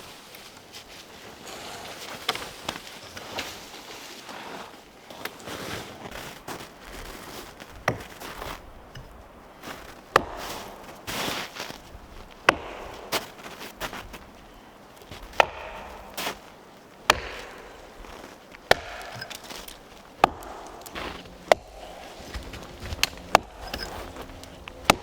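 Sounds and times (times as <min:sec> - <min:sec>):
axe chopping wood: 0:07.8 - 0:09.2, 0:10.1 - 0:10.8, 0:12.4 - 0:13.5, 0:15.2 - 0:25.0
rustling: 0:16.0 - 0:25.0.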